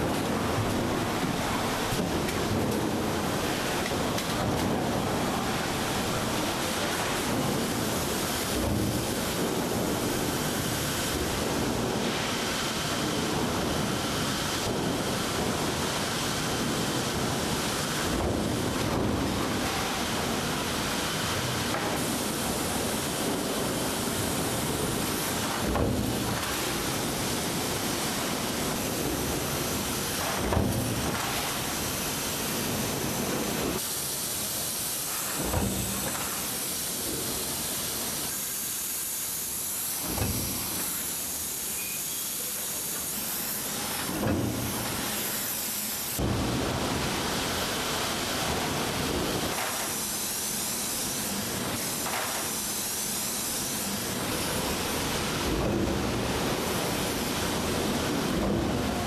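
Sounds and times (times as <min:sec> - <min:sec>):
heavy machine thump: 0:00.0 - 0:12.4, 0:24.4 - 0:33.9, 0:35.1 - 0:37.6, 0:39.9 - 0:41.5, 0:43.5 - 0:45.4
machinery hiss: 0:00.0 - 0:59.0.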